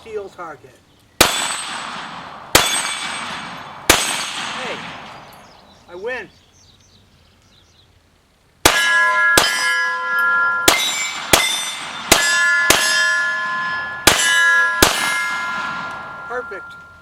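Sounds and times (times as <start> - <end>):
pistol shots: 1.2 - 5.5, 10.6 - 16.8
steel targets ringing: 1.2 - 5.5, 8.6 - 17.0.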